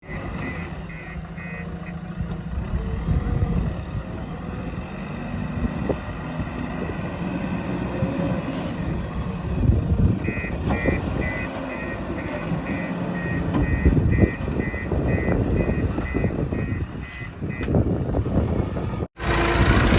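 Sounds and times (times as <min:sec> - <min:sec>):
diesel engine running: 0:00.0 - 0:19.9
engine knocks: 0:09.4 - 0:19.9
reversing alarm beeps: 0:10.2 - 0:17.7.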